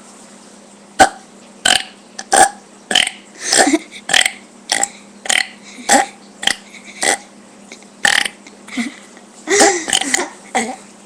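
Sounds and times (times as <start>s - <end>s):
person burping: 1.0s - 7.3s, 8.0s - 8.9s, 9.5s - 10.8s.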